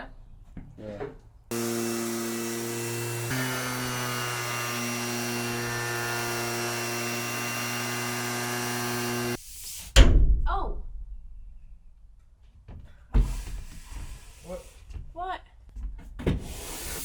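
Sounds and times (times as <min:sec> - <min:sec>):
power sander running: 0:01.5 - 0:09.4.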